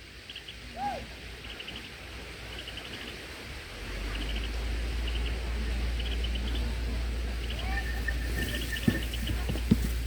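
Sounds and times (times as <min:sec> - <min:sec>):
cricket chirping: 0:04.2 - 0:09.9.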